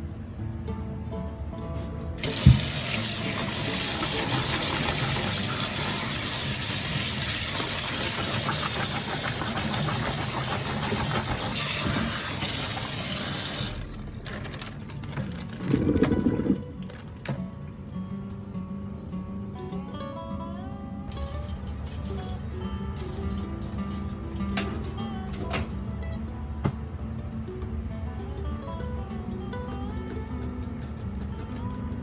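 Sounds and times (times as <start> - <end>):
tap water running into sink: 2.2 - 16.6.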